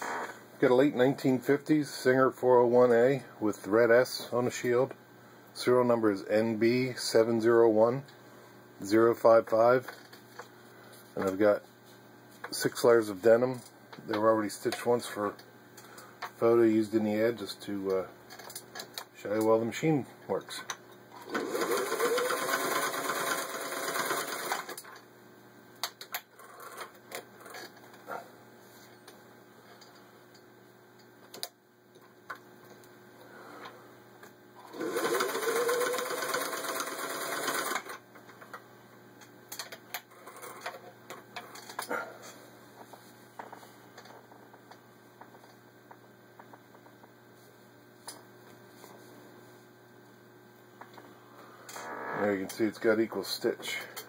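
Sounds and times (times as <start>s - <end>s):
steady low hum: 0.0s - 21.4s, 23.7s - 54.0s
sewing machine stitching: 21.2s - 24.8s, 34.6s - 37.9s.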